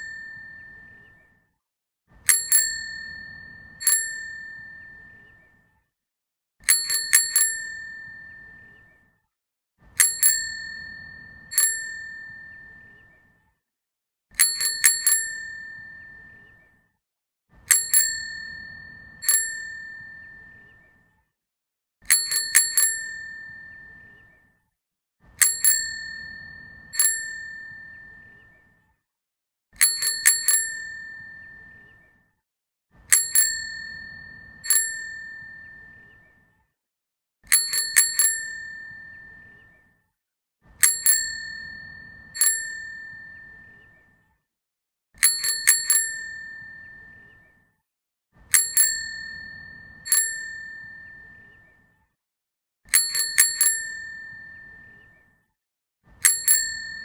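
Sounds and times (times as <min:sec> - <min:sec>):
bicycle bell dings: 0:00.0 - 0:01.1, 0:02.2 - 0:05.2, 0:06.6 - 0:08.7, 0:10.0 - 0:13.0, 0:14.4 - 0:16.3, 0:17.7 - 0:20.7, 0:22.1 - 0:24.2, 0:25.4 - 0:28.4, 0:29.8 - 0:31.8, 0:33.1 - 0:36.0, 0:37.5 - 0:39.6, 0:40.8 - 0:43.8, 0:45.2 - 0:47.3, 0:48.5 - 0:51.5, 0:52.9 - 0:55.0, 0:56.2 - 0:57.0.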